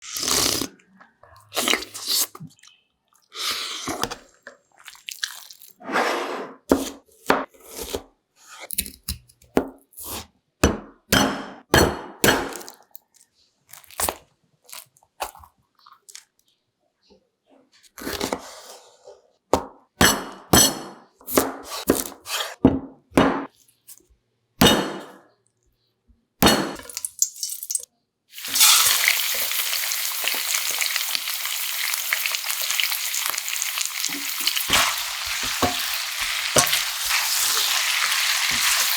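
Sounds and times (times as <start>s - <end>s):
chopping vegetables on cutting board: 6.7s - 12.6s, 19.6s - 23.5s, 24.6s - 25.2s.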